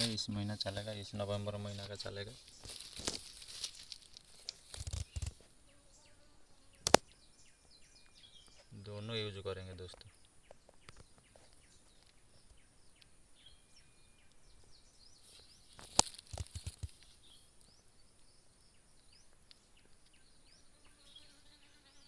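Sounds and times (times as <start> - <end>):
small birds chirping: 0.0 - 22.0
sharp click: 6.8 - 7.1.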